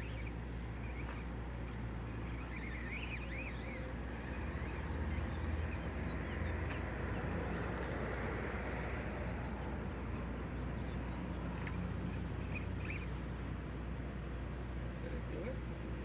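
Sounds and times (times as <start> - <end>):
faint bird chirps: 0.0 - 7.1, 10.7 - 13.2
electric motor and gears humming: 0.0 - 16.0.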